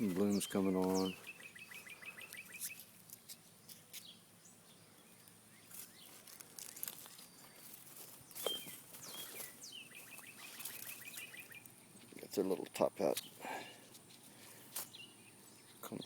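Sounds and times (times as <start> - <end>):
birds chirping: 0.0 - 16.0
bird rapid trill: 8.4 - 11.7.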